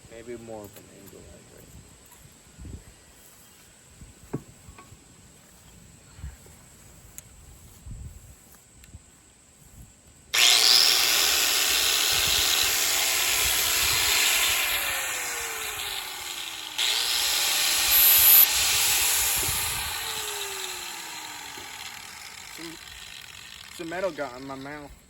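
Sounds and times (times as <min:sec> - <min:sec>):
power sander grinding steel: 0:10.4 - 0:25.0.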